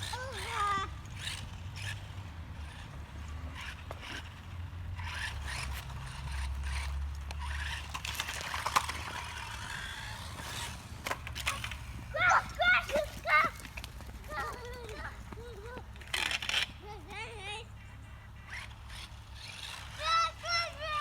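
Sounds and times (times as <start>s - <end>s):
toy car low rumble: 0.0s - 21.0s
scraping and rattling on ground: 5.0s - 16.9s.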